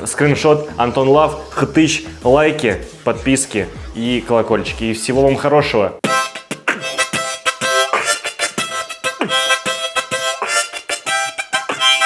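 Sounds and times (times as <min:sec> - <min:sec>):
percussive beat: 0:02.0 - 0:05.4, 0:06.0 - 0:12.0
harmonica playing chords: 0:06.0 - 0:12.0.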